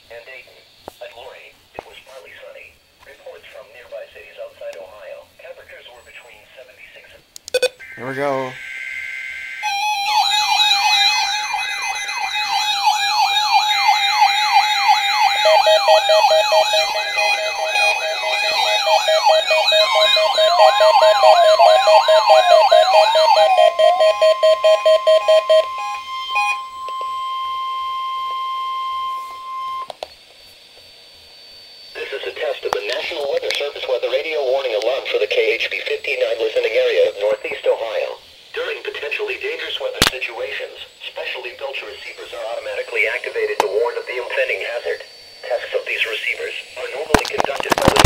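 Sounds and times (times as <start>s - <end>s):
rapid electronic beeping: 7.5s - 29.9s, 31.8s - 39.9s, 41.2s - 48.0s
steady alarm tone: 7.5s - 48.0s
siren-like wailing alarms: 7.6s - 30.1s, 31.3s - 48.0s.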